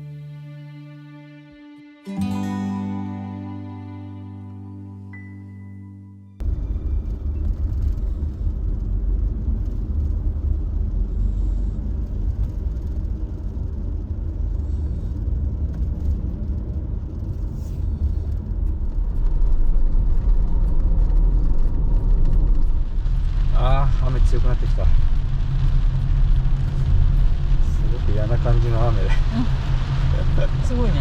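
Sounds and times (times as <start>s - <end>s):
road and engine rumble in car: 6.4s - 31.0s.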